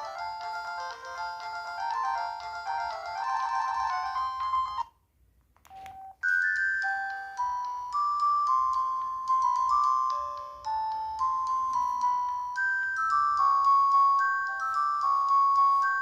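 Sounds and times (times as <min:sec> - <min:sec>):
mobile phone ringtone melody: 0:00.0 - 0:04.9, 0:05.7 - 0:16.0
brief beep: 0:05.7 - 0:06.2.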